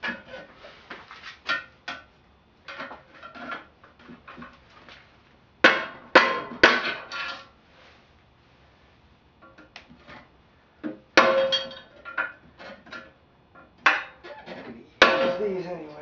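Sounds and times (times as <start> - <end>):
hammer striking metal: 5.6 - 7.0, 15.0 - 15.5.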